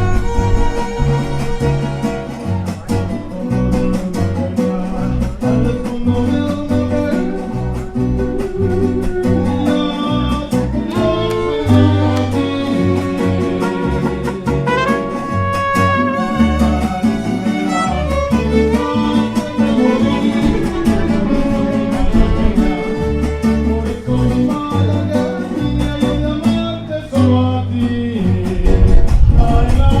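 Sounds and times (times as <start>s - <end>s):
violins playing melody: 0.0s - 2.6s, 10.9s - 23.9s
deep bass notes: 0.0s - 30.0s
mariachi band playing: 0.0s - 30.0s
strummed guitars: 0.0s - 30.0s.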